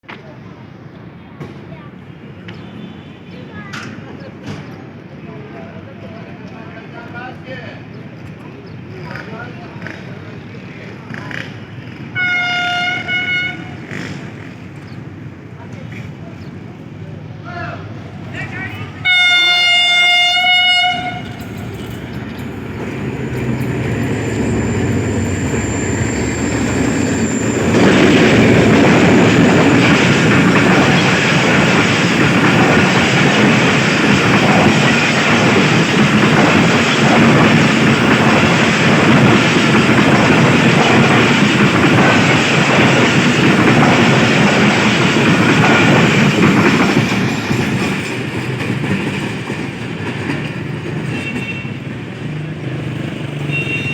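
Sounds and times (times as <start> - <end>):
train rumble: 7.8 - 53.9
train horn: 12.2 - 13.8, 19.0 - 22.0, 53.5 - 53.9
wheels clattering over rails: 20.9 - 53.2.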